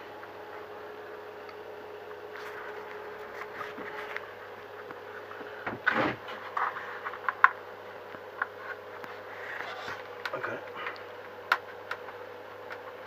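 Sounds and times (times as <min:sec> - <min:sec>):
steady hum: 0:00.0 - 0:13.0
rustling scrape: 0:08.6 - 0:10.0.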